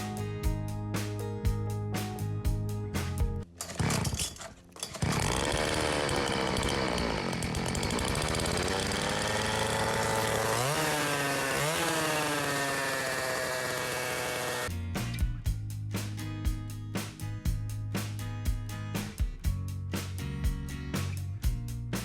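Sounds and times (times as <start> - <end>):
motorcycle engine revving: 3.7 - 14.7.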